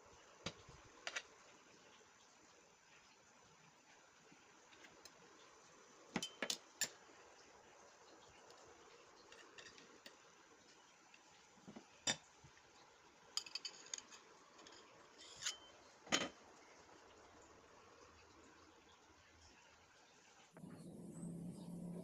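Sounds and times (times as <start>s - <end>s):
utensils and dishes clinking: 6.2s - 7.0s, 13.4s - 16.4s.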